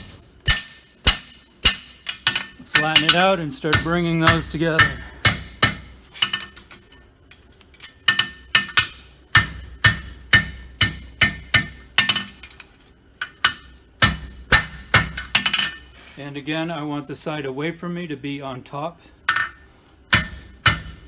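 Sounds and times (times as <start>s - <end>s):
hammer striking metal on anvil: 0.0s - 6.7s, 8.1s - 12.6s, 13.2s - 15.9s, 19.3s - 21.0s.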